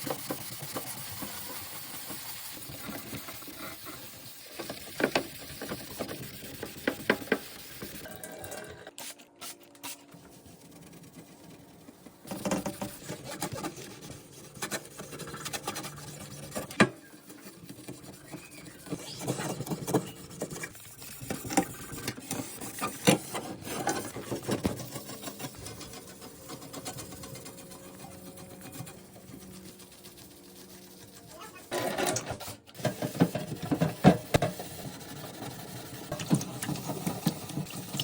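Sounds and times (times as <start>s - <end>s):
rubbing and scraping: 9.0s - 38.0s.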